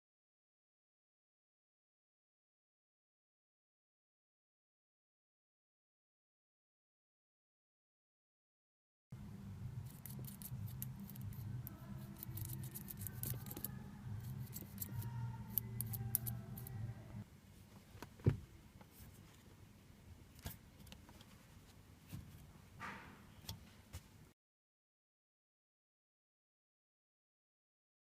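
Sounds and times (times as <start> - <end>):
steady low hum: 9.2 - 17.7.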